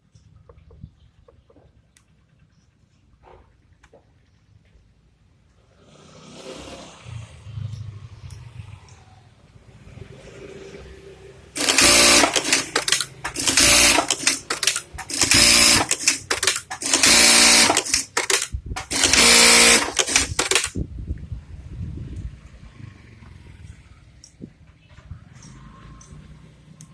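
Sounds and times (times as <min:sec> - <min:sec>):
industrial sewing machine running: 0:11.6 - 0:20.8.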